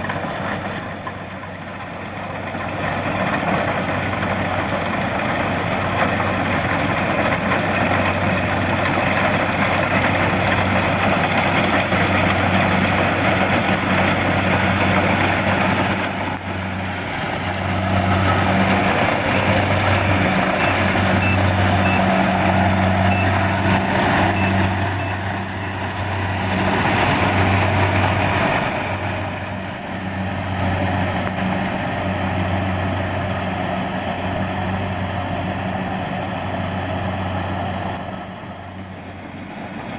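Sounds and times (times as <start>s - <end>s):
threshing machinery clatter: 0.0s - 34.1s
diesel engine hum: 0.0s - 39.9s
faint high beeps: 20.6s - 22.1s.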